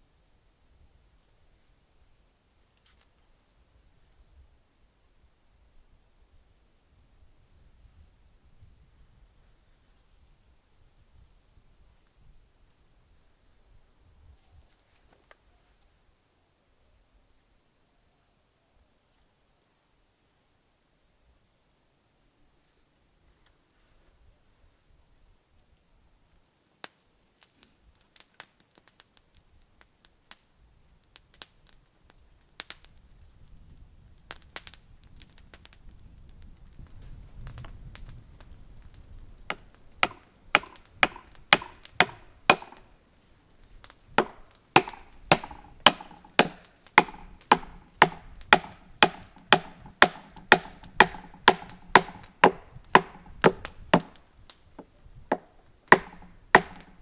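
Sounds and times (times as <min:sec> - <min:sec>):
hand tool chopping wood: 0:39.5 - 0:42.8, 0:44.2 - 0:54.2, 0:54.8 - 0:57.0.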